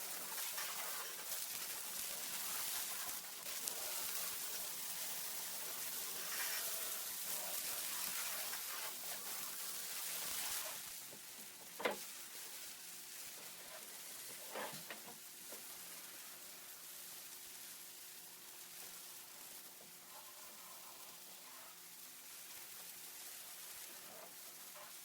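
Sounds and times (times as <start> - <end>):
pressure washer spray hissing: 0.0 - 15.1.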